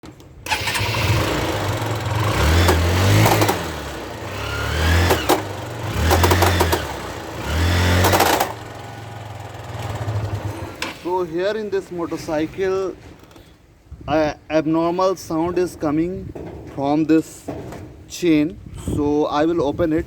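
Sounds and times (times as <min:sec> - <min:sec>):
motorcycle engine revving: 0:00.5 - 0:11.0
drive chain clicking: 0:02.3 - 0:03.8, 0:05.0 - 0:07.1, 0:07.9 - 0:08.8.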